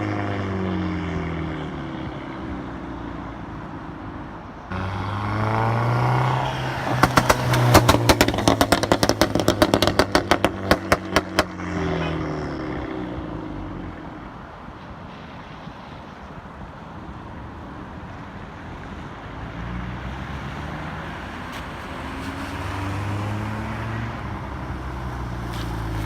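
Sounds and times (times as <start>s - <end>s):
exhaust crackles and pops: 4.7s - 12.0s
car engine revving: 4.7s - 14.0s.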